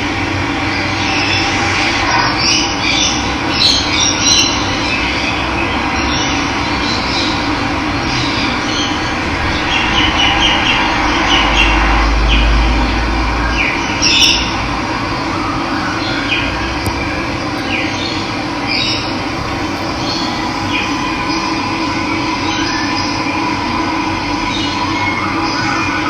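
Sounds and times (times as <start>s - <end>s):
low rumble: 0.4s - 15.5s, 16.6s - 24.4s
birds chirping: 16.0s - 23.3s.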